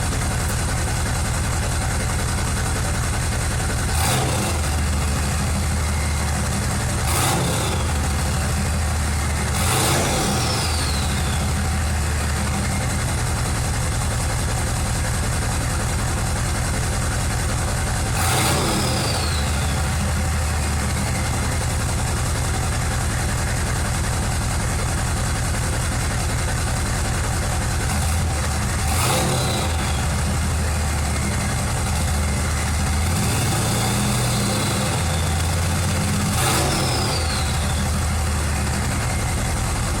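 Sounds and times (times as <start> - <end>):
diesel engine idling: 0.0 - 40.0
engine throttle blips: 0.0 - 40.0
turbo whistle: 3.9 - 13.5, 18.2 - 22.3, 28.9 - 40.0.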